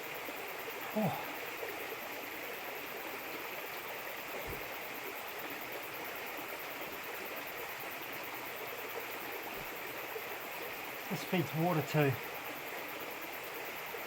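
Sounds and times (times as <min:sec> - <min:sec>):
running water rushing: 0:00.0 - 0:14.0.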